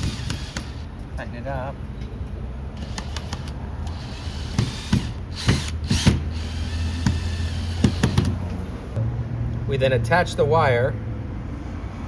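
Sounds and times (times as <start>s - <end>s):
power screw gun driving screw: 2.8s - 8.3s
rasping bursts: 2.8s - 8.4s.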